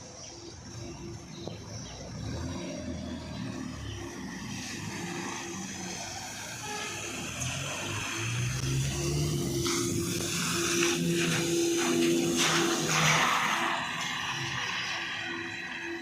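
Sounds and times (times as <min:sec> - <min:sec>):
trolleybus humming: 0:00.0 - 0:16.0
tyre hiss on wet road: 0:04.6 - 0:16.0.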